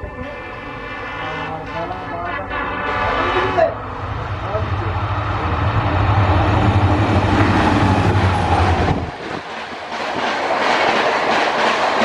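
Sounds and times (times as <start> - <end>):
diesel locomotive engine drone: 0.0 - 12.0
train wheels clattering over rail joints: 7.4 - 12.0.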